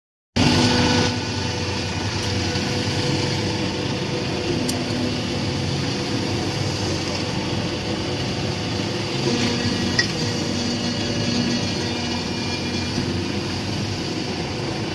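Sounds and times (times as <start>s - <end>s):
machine motor humming: 0.4s - 14.9s.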